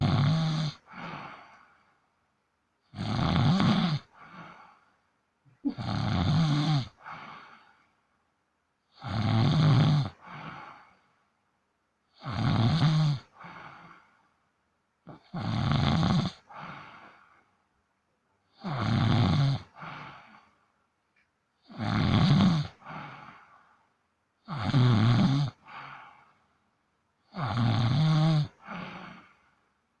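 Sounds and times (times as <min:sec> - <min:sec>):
baby snoring: 0:00.0 - 0:01.4, 0:02.9 - 0:04.6, 0:05.6 - 0:07.7, 0:09.0 - 0:10.6, 0:12.2 - 0:14.0, 0:15.1 - 0:16.7, 0:18.6 - 0:20.3, 0:21.7 - 0:23.4, 0:24.5 - 0:25.6, 0:27.3 - 0:29.4.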